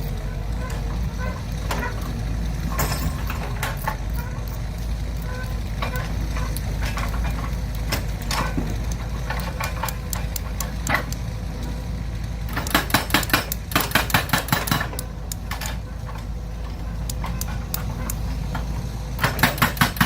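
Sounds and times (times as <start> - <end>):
engine running: 0.0 - 20.0
scattered clicks: 3.2 - 11.8, 12.4 - 20.0
rapid sharp knocks: 12.5 - 15.6, 19.2 - 20.0.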